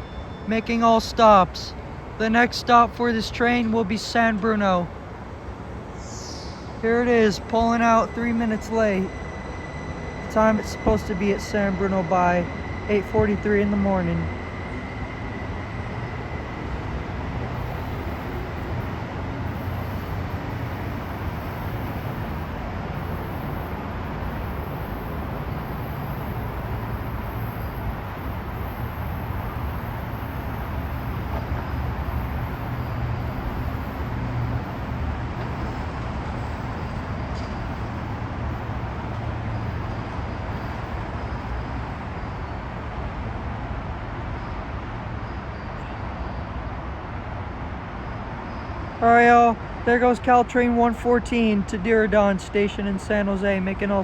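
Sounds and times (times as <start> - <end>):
train rumbling past: 0.0 - 54.0.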